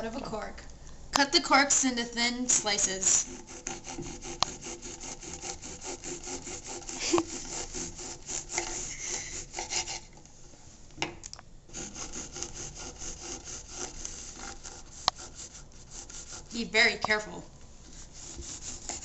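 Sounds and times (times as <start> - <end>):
blade sawing through cork: 2.5 - 10.1, 11.7 - 16.7, 17.9 - 19.0.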